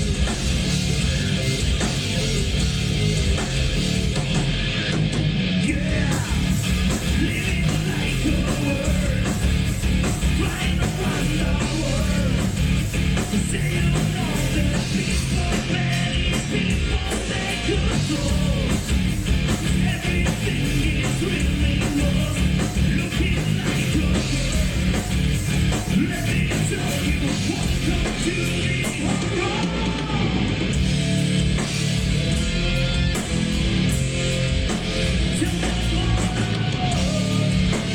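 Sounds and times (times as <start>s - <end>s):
rock band playing: 0.0s - 37.9s
person yelling vocals: 29.0s - 30.4s.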